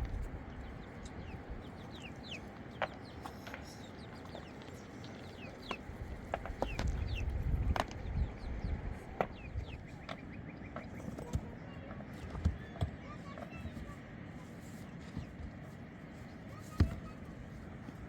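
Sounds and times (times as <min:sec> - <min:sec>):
low rumble: 0:00.0 - 0:01.9
birds chirping: 0:00.0 - 0:18.0.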